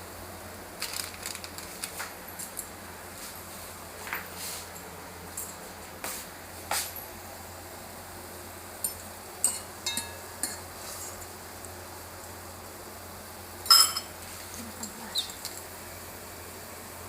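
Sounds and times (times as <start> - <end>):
kitchen utensils clinking: 8.9 - 10.6, 13.7 - 14.1
cookware clattering: 9.5 - 10.6, 13.7 - 14.1.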